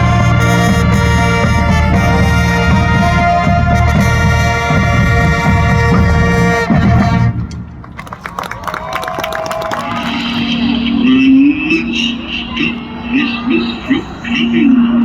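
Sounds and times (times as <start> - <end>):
brass sustained chords: 0.0 - 7.7, 9.8 - 15.0
marching band drums: 0.0 - 7.8.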